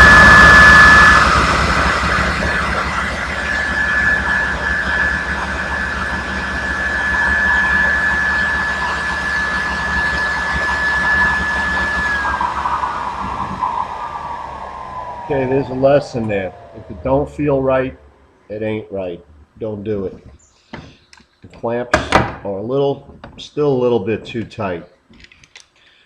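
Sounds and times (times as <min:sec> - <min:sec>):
table saw whining: 0:00.0 - 0:18.5.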